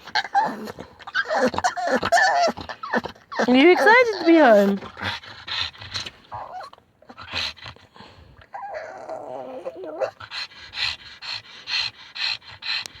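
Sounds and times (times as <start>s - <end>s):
dog whining cry: 0.0s - 4.8s, 6.3s - 7.4s, 8.5s - 10.4s
dog panting and snorting: 0.0s - 8.8s, 9.4s - 13.0s.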